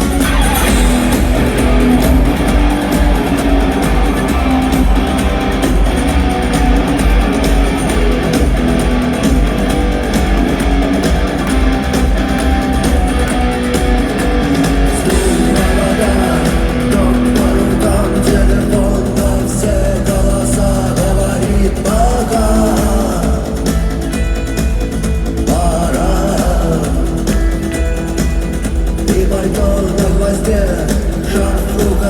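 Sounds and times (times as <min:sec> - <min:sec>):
rock band playing live: 0:00.0 - 0:32.0
person singing: 0:14.7 - 0:23.9, 0:25.4 - 0:28.3, 0:29.0 - 0:32.0.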